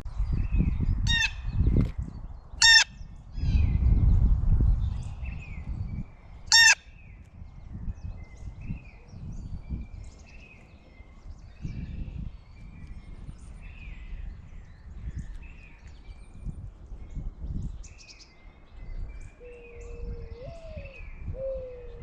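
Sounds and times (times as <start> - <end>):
birds calling: 1.0 - 1.8, 2.6 - 3.7, 6.4 - 7.4.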